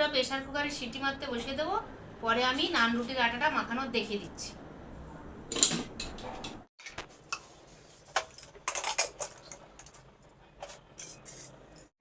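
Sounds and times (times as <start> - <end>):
kitchen utensils clinking: 5.5 - 7.5, 8.1 - 11.9.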